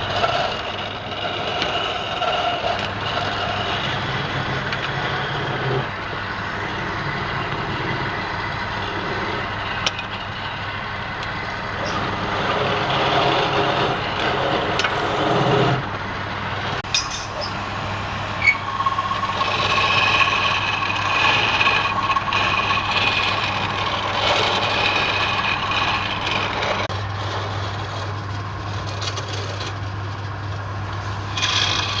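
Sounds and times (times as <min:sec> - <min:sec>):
turning tool scraping wood: 0:00.0 - 0:15.9, 0:16.7 - 0:32.0
wood lathe motor hum: 0:00.0 - 0:28.1, 0:30.5 - 0:32.0
high squeal of cutting: 0:16.8 - 0:26.9.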